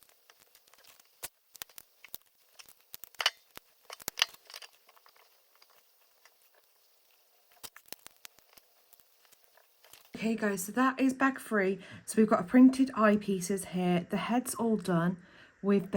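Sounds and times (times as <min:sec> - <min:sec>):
plastic pieces clattering: 0:00.0 - 0:06.7
plastic bricks clicking: 0:00.3 - 0:06.4.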